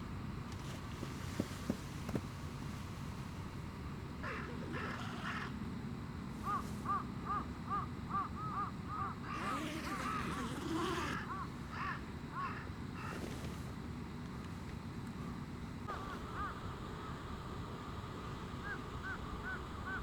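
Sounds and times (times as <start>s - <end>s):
harsh bird calls: 4.2s - 5.6s, 6.4s - 13.5s, 15.9s - 20.0s.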